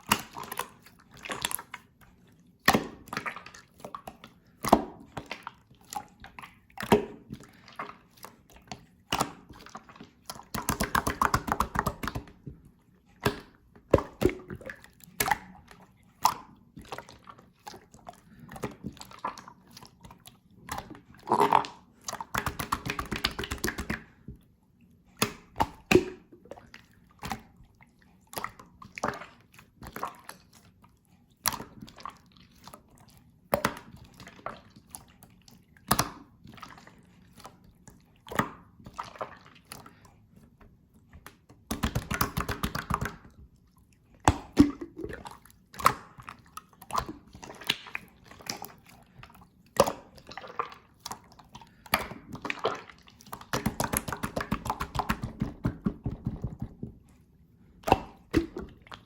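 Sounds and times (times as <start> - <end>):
slime squishing with sticky pops: 0.0 - 59.0.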